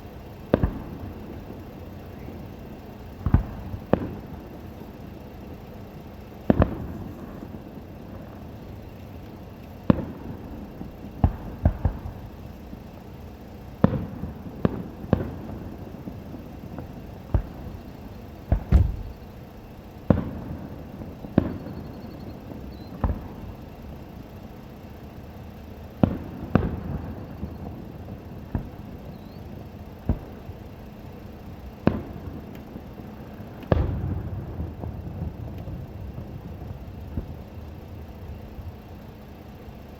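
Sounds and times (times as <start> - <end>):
low background noise: 0.0 - 39.9
fireworks booming: 0.1 - 8.9, 9.8 - 12.4, 13.7 - 23.8, 25.9 - 38.4.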